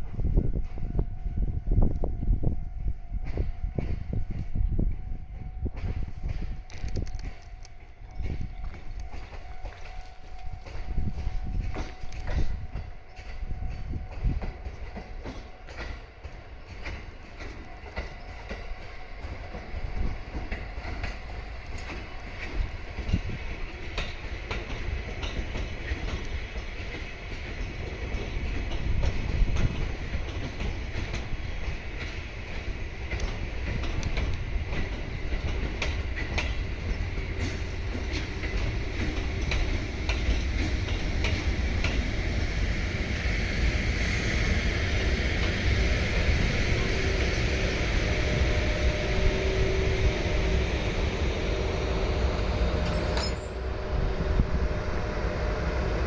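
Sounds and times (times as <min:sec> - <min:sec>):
train passing with low rumble: 0:00.0 - 0:56.0
wheels clicking over rail joints: 0:03.2 - 0:42.4.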